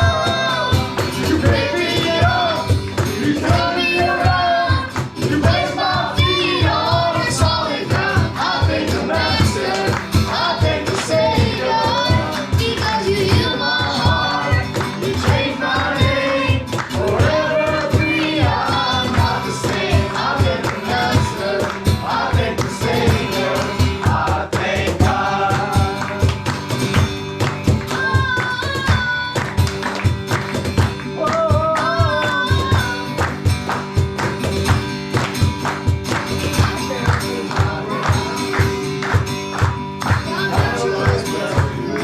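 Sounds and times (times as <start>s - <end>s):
voices singing together: 0.0s - 26.9s, 36.5s - 42.0s
band with a steady beat: 0.0s - 42.0s.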